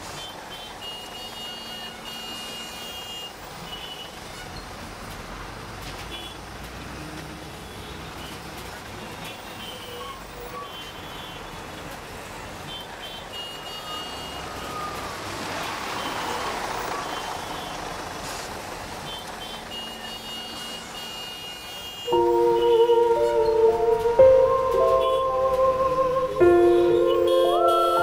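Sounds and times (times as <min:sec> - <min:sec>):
road traffic: 0:00.0 - 0:28.0
vehicle passing: 0:14.4 - 0:19.1, 0:22.1 - 0:28.0
music: 0:22.1 - 0:28.0.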